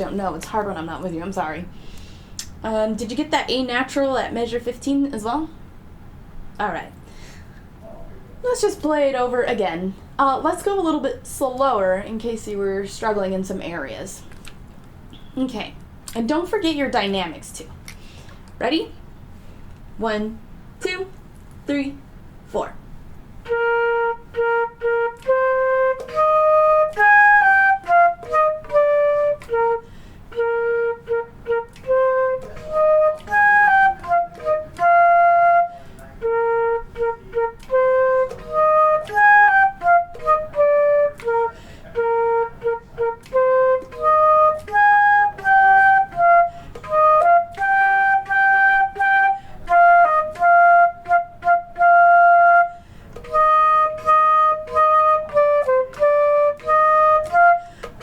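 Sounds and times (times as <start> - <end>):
solo flute melody: 23.4 - 58.0.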